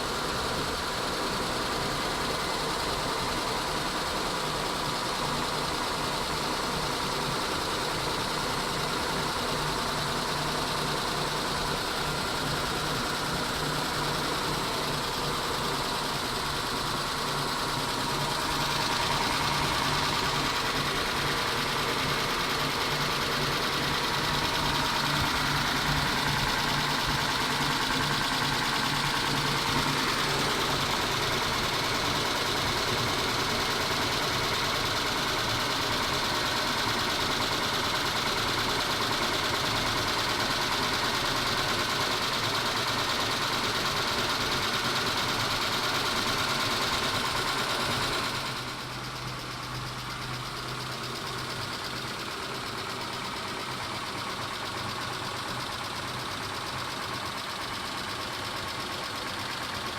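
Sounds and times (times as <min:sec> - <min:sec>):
car engine idling: 0:00.0 - 0:59.9
engine tapping: 0:00.1 - 0:59.9.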